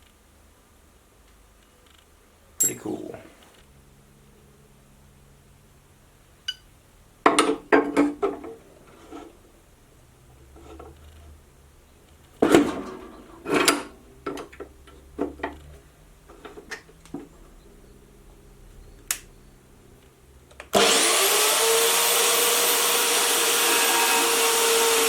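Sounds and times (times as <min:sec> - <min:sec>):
metal clanking and knocking: 0:12.4 - 0:14.6.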